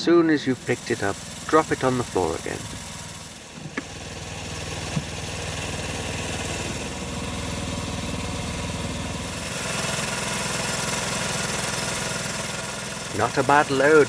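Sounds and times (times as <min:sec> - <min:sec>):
small locomotive engine running: 0:00.0 - 0:14.0
light tap: 0:03.6 - 0:03.9.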